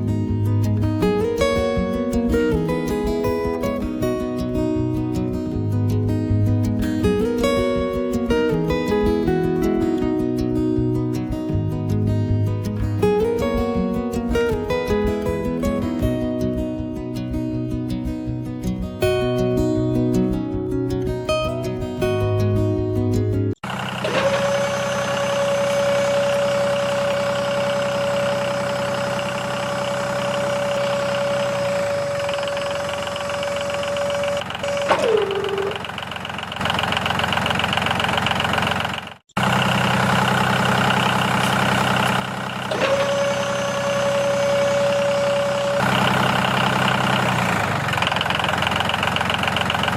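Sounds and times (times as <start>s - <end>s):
small motor whining: 23.6s - 38.5s, 40.9s - 49.9s.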